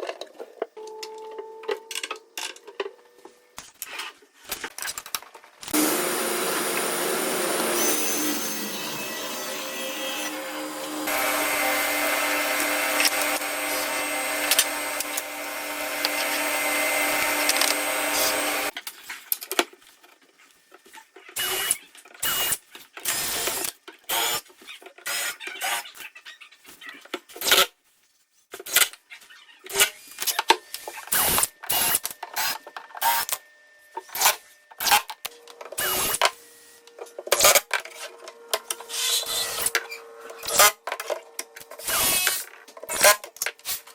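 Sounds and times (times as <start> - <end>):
power tool running: 5.7 - 18.7, 34.1 - 43.2.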